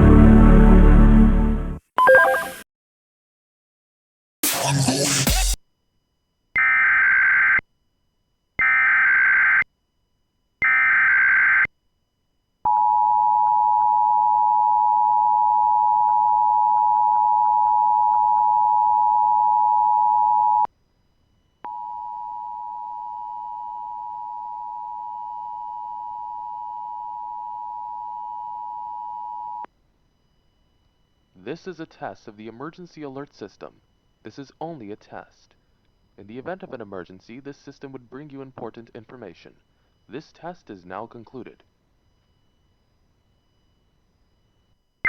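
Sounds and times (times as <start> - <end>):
two-tone attention signal: 2.0 - 2.6.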